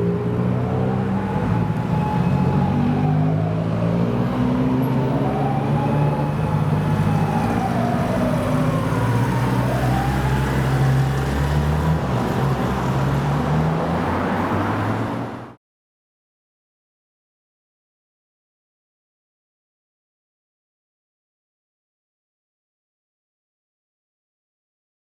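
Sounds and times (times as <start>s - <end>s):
ambulance siren wailing: 0.0s - 11.4s
passing traffic: 0.0s - 15.6s.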